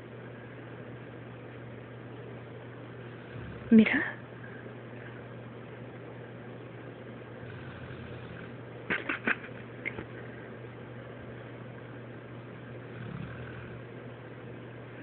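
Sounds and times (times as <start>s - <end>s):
steady low hum: 0.0s - 15.0s
dog snoring: 3.1s - 4.0s, 7.4s - 8.6s, 12.8s - 13.9s.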